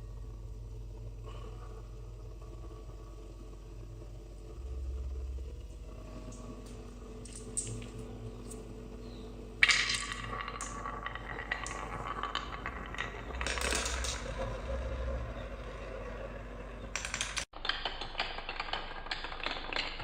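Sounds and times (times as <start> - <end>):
marbles clicking on wooden run: 9.6 - 15.2, 16.9 - 20.0.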